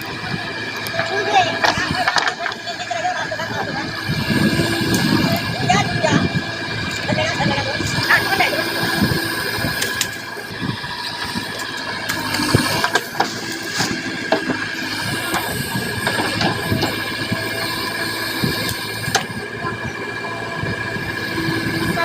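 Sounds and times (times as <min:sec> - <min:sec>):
backhoe diesel engine running: 0:00.0 - 0:22.0
knocks and clanks: 0:11.6 - 0:17.4.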